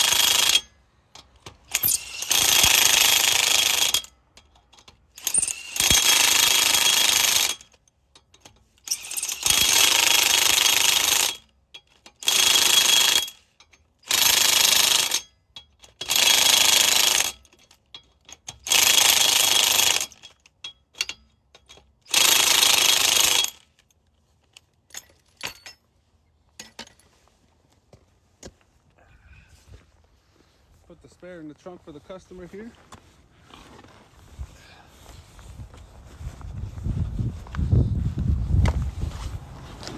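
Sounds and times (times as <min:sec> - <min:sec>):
impact wrench hammering: 0:00.0 - 0:23.6.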